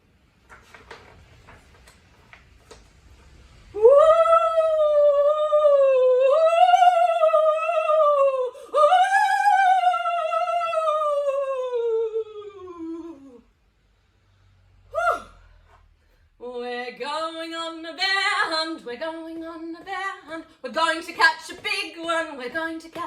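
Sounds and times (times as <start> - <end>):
woman imitating howling wind: 14.9 - 15.5.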